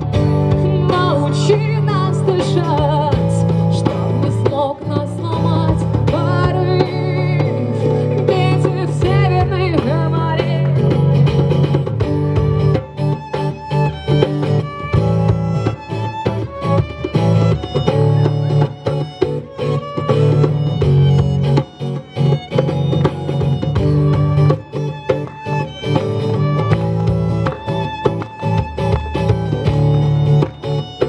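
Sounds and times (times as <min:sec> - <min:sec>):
bass: 0:00.0 - 0:31.0
strummed guitar: 0:00.0 - 0:31.0
violin melody: 0:00.0 - 0:31.0.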